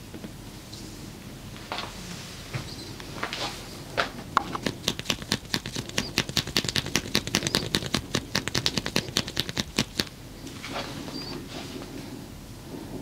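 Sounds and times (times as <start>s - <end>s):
hands slapping body rapidly: 4.5s - 10.2s.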